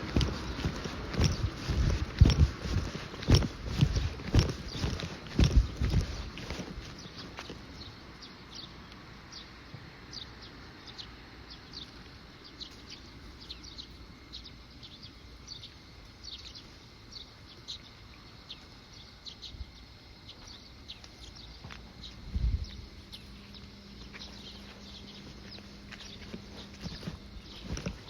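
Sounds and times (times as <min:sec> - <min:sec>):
low background rumble: 0:00.0 - 0:07.2
small birds chirping: 0:00.0 - 0:28.0.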